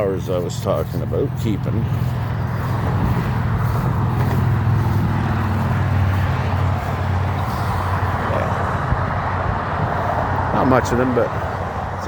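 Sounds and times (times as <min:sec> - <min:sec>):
lawn mower engine running: 0:00.0 - 0:08.2.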